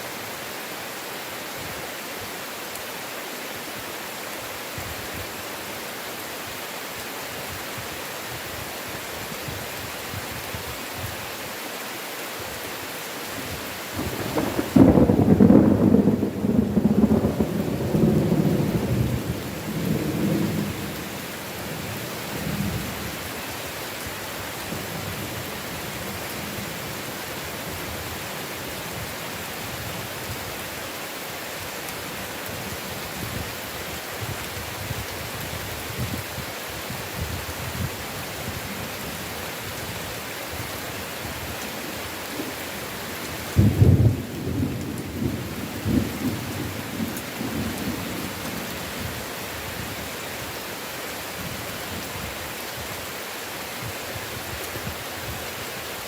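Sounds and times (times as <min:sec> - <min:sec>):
heavy rain: 0:00.0 - 0:56.0
thunder rumbling: 0:14.0 - 0:21.1, 0:43.5 - 0:48.7.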